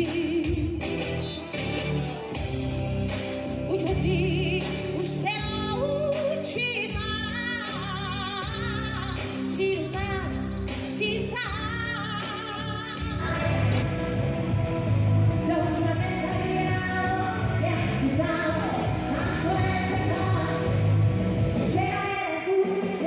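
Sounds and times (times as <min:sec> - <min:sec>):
live pop-rock band playing: 0:00.0 - 0:22.2.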